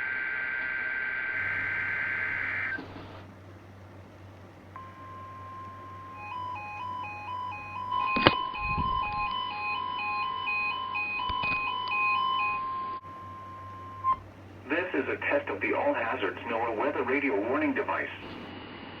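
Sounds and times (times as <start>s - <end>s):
steady high alarm tone: 1.4s - 2.8s, 4.8s - 18.3s
warbling electronic alert alarm: 4.8s - 14.2s.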